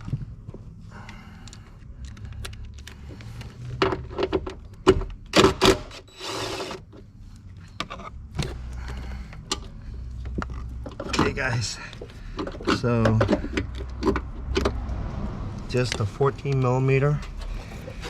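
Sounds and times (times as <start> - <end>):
hand tools clicking and knocking: 8.8 - 14.8.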